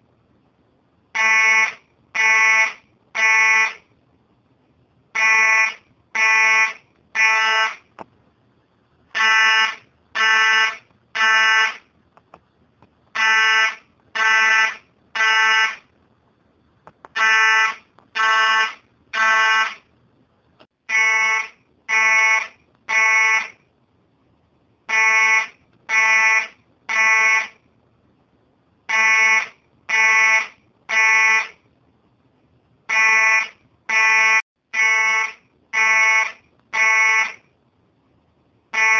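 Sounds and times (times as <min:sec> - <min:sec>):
fire alarm buzzy beeps: 0:01.2 - 0:03.8, 0:05.2 - 0:07.9, 0:09.2 - 0:11.8, 0:13.2 - 0:15.9, 0:17.2 - 0:19.8, 0:20.9 - 0:23.6, 0:24.9 - 0:27.6, 0:28.9 - 0:31.6, 0:32.9 - 0:37.5.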